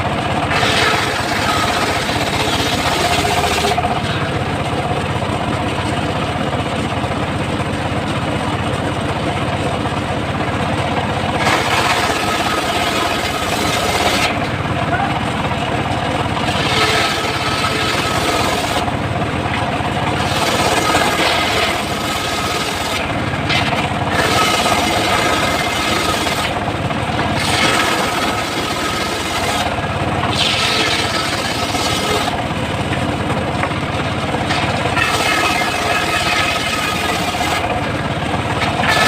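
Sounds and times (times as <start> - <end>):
machine running: 0.0 - 6.9, 10.3 - 39.0
saw blade ripping a log: 0.5 - 4.3, 11.4 - 14.4, 16.4 - 18.9, 20.2 - 26.6, 27.2 - 32.4, 34.4 - 37.8, 38.6 - 39.0.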